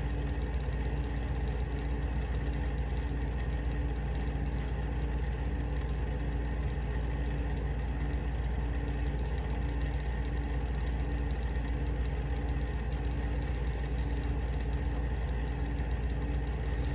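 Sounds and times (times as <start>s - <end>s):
low mechanical hum: 0.0s - 16.9s.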